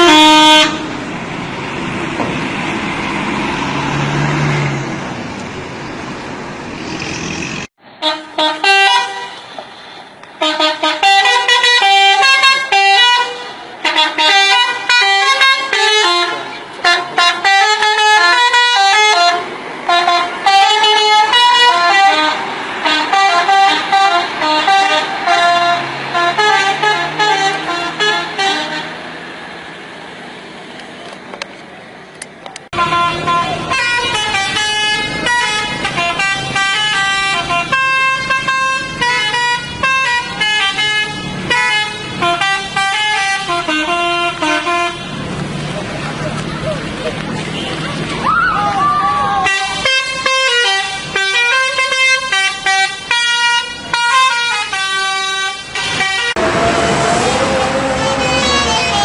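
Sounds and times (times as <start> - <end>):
multi-tone bus horn melody: 0.0 - 1.3, 7.8 - 29.2, 32.7 - 45.3, 49.4 - 59.0.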